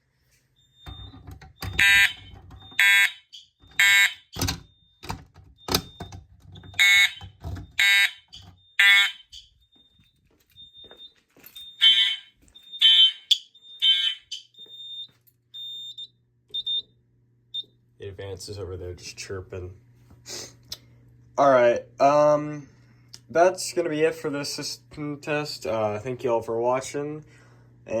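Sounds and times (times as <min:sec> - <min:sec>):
fire alarm horn blasts: 0:00.8 - 0:05.0, 0:06.6 - 0:10.0, 0:11.6 - 0:16.8.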